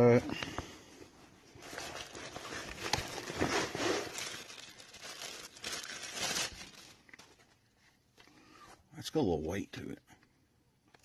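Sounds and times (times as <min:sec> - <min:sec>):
packaging crinkling and rustling: 0:01.5 - 0:07.7.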